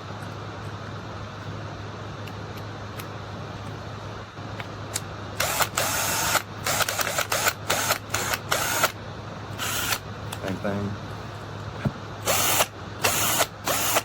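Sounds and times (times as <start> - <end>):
cordless drill motor whirring: 5.4 - 9.0, 9.6 - 10.0, 12.2 - 14.0.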